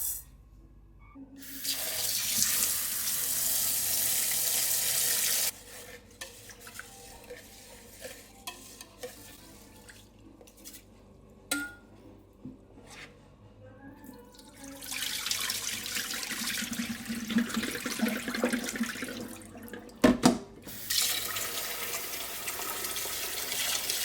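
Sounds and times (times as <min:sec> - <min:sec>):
kitchen tap running: 0:01.5 - 0:05.5, 0:14.8 - 0:24.0.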